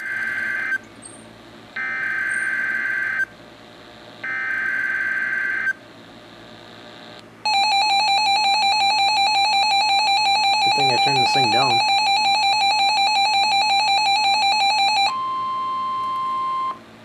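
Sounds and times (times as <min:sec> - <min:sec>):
loud buzzy pulsing alarm tone: 0:07.5 - 0:16.8.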